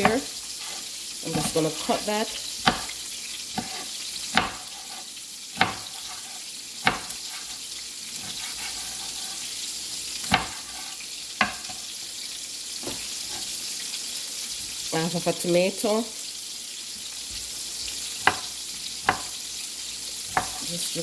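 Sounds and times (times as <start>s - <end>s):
chicken sizzling in oil: 0.0s - 21.0s
knife knocking on cutting board: 11.4s - 11.8s, 18.2s - 19.3s.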